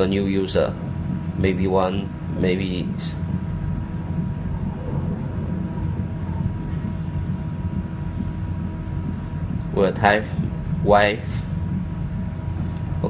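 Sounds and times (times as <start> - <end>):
low background rumble: 0.0 - 13.0
faint constant high tone: 3.1 - 9.6.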